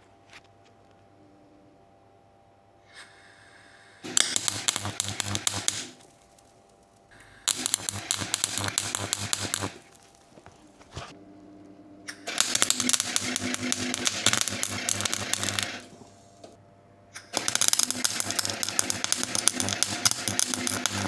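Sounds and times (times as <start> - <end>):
welding arc crackling: 4.0 - 10.7, 12.3 - 16.3, 17.3 - 21.0.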